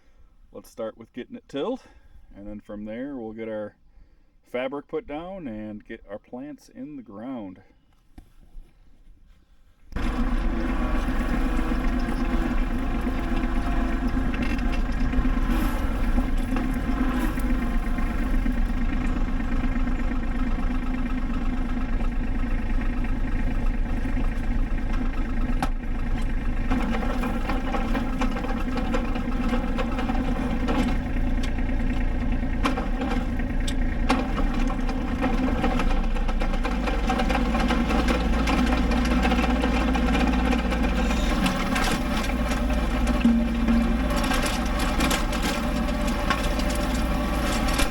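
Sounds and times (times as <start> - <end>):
tractor diesel engine running: 9.9 - 47.9.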